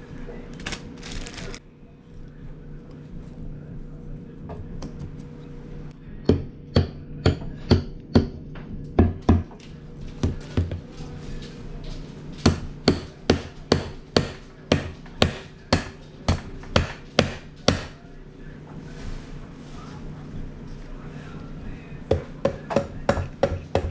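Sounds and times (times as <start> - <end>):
hammer blows: 6.0 - 18.1.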